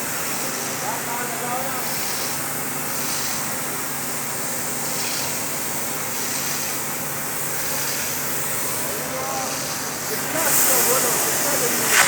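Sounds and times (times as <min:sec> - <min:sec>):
steady hissing noise: 0:07.8 - 0:12.0.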